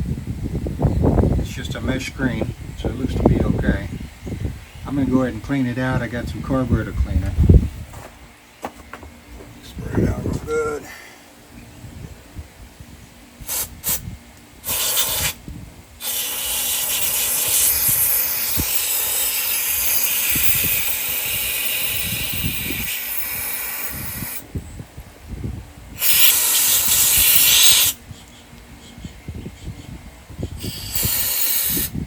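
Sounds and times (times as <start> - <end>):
aerosol can spraying: 13.5 - 14.0, 14.6 - 15.4, 16.0 - 24.4, 26.0 - 28.0, 30.6 - 31.9.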